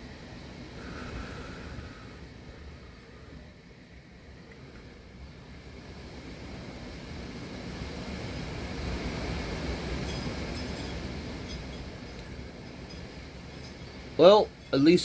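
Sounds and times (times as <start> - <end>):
strong wind gusting: 0.0 - 15.0
faint ticks and rattles: 9.6 - 15.0.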